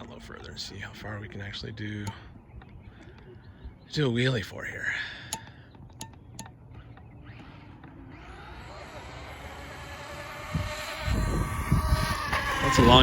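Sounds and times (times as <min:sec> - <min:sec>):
electric motor whine: 0:06.8 - 0:13.0.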